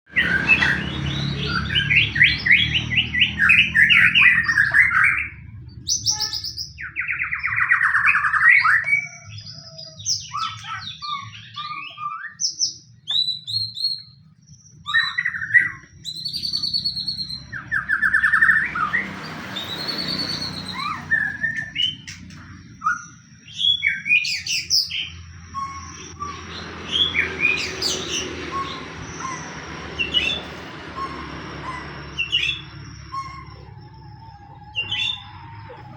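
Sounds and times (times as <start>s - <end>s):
bird singing trills and whistles: 0.1s - 35.9s.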